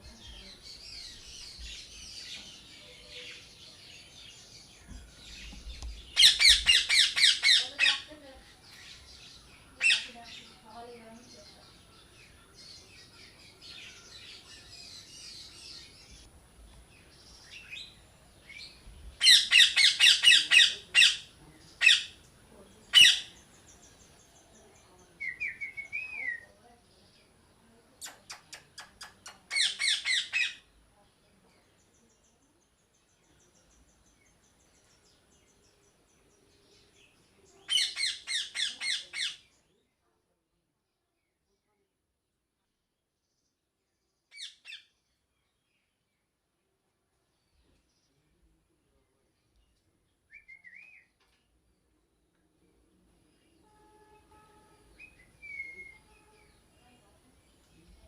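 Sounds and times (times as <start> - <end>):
faint bird chatter: 0.0 - 42.0, 43.2 - 58.0
parrot squawking: 6.2 - 8.1, 9.8 - 10.1, 19.2 - 21.2, 22.9 - 23.3, 29.5 - 30.6, 37.7 - 39.4.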